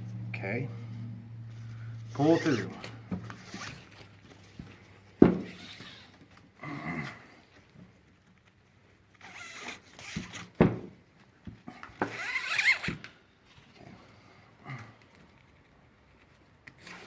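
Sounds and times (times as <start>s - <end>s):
strap rasping through bracket: 2.0s - 6.4s, 9.1s - 10.7s.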